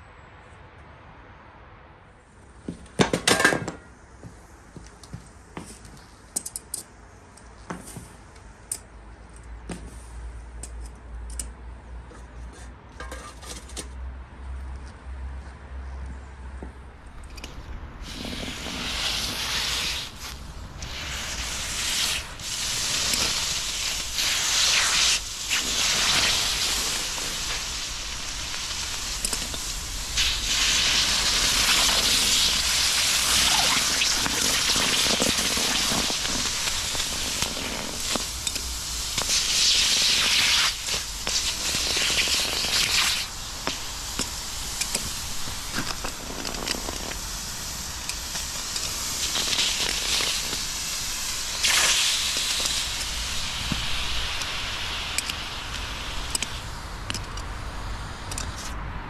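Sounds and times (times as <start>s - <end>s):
furnace burner flame hissing: 2.3s - 8.9s, 9.5s - 10.8s, 16.9s - 59.0s.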